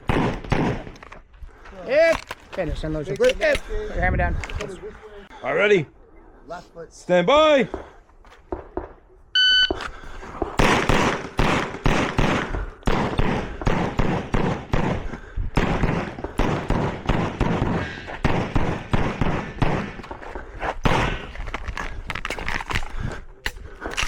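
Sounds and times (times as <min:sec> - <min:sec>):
rapid pistol shots: 0:00.0 - 0:01.0, 0:10.6 - 0:20.0
shot timer beep: 0:09.4 - 0:09.8.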